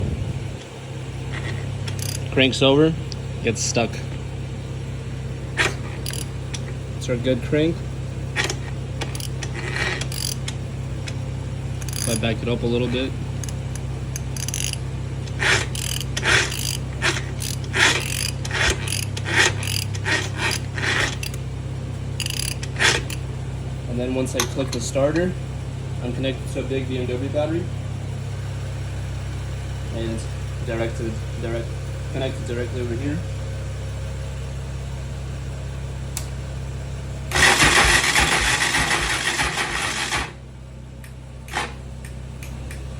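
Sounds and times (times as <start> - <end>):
steady low hum: 0.0 - 39.0, 40.3 - 42.9
rasping ratcheting mechanical strokes: 1.3 - 2.4, 5.4 - 6.8, 8.3 - 12.6, 13.4 - 21.4, 22.2 - 23.3, 37.3 - 40.4, 41.5 - 41.8
electric starter cranking engine: 1.3 - 2.7, 5.3 - 7.2, 8.2 - 21.5, 22.1 - 23.3, 37.3 - 40.4, 41.4 - 42.8
sharp click: 36.2 - 36.4, 41.0 - 42.9.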